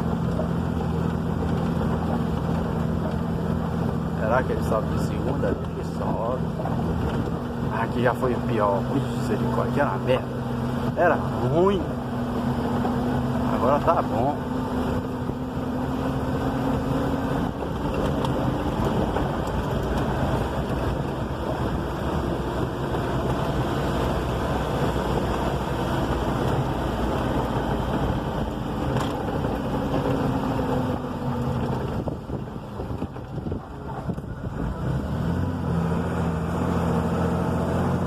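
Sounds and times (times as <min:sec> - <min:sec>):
vehicle engine under load: 0:00.0 - 0:38.0
wind buffeting microphone: 0:14.4 - 0:35.8.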